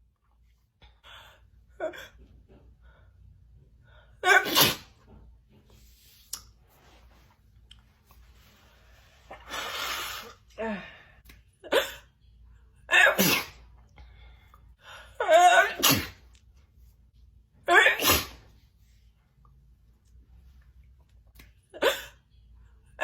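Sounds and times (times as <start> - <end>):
woman sneezing: 4.2 - 4.9, 15.3 - 16.2, 17.7 - 18.4.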